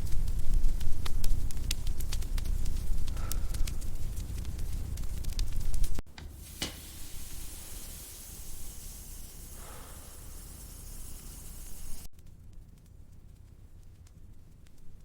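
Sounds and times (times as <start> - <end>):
steady hiss: 0.0 - 12.1
fire crackling and popping: 0.0 - 15.0.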